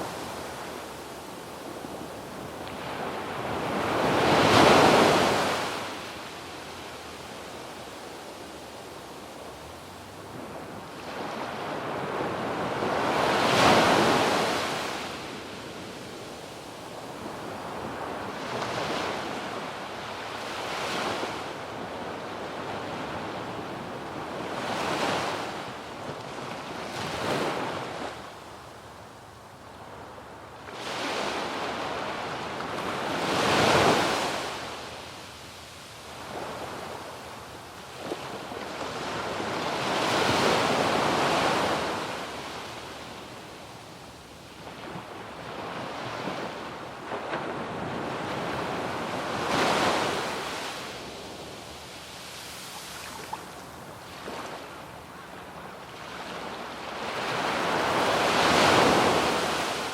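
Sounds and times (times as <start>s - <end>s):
sea waves breaking on beach: 44.7s - 54.8s.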